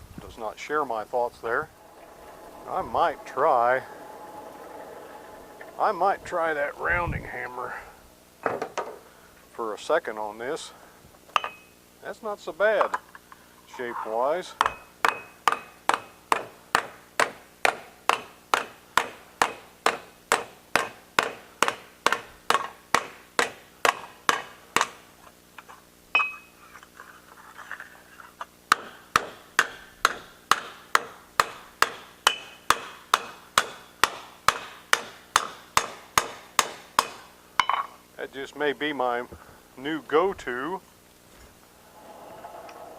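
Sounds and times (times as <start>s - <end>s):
metallic ring: 1.6s - 6.7s, 26.2s - 26.6s, 37.6s - 38.0s
hammer striking steel: 14.6s - 25.0s, 28.7s - 38.0s.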